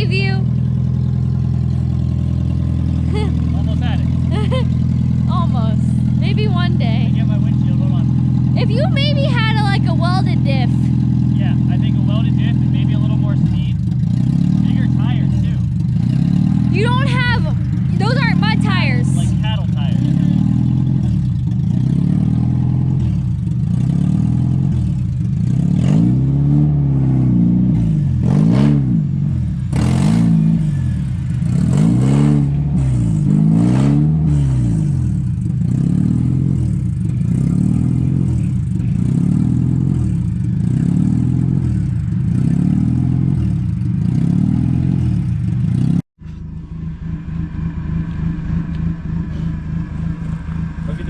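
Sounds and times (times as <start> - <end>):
car engine revving hard: 11.2 - 46.0.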